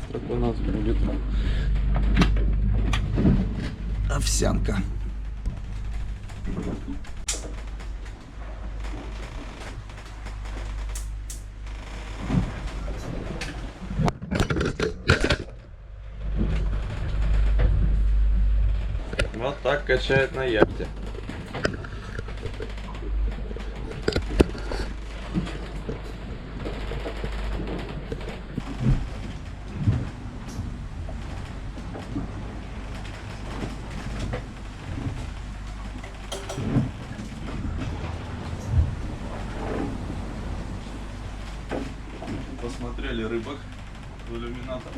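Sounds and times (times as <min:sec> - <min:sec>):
steady low hum: 0:00.0 - 0:14.0, 0:15.8 - 0:44.9
boat cabin creaking and rattling: 0:00.0 - 0:44.9
cookware clattering: 0:36.3 - 0:36.9.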